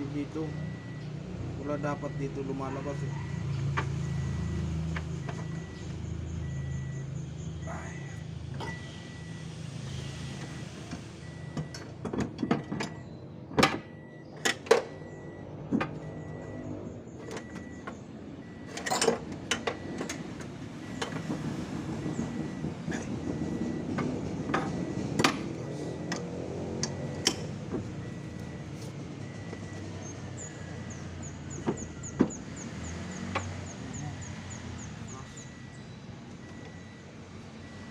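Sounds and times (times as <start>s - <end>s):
metallic clinks of tools and parts: 18.7s - 20.2s.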